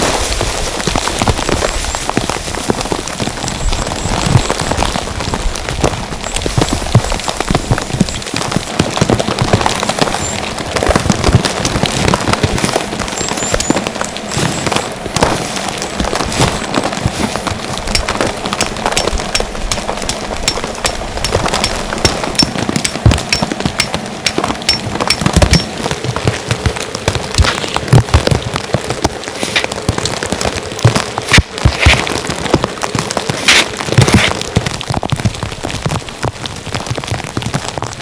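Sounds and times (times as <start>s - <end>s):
rain drumming on tent fabric: 0.0s - 38.0s
sharp evenly spaced ticks: 12.0s - 28.2s.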